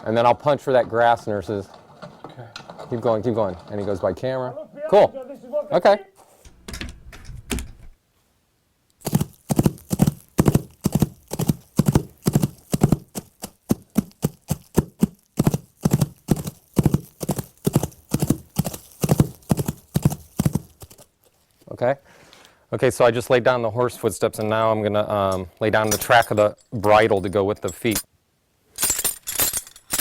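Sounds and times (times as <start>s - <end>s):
clip-clop hoofbeats: 9.0s - 21.1s.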